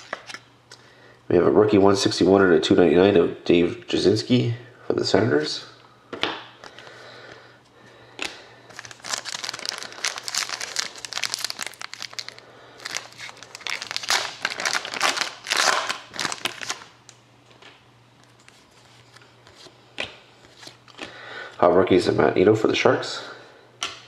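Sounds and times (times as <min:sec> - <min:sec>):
card pack wrapper crinkling: 0:08.2 - 0:17.0.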